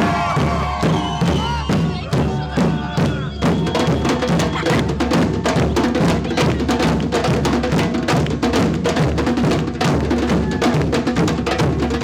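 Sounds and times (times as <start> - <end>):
drum band playing: 0.0 - 12.0.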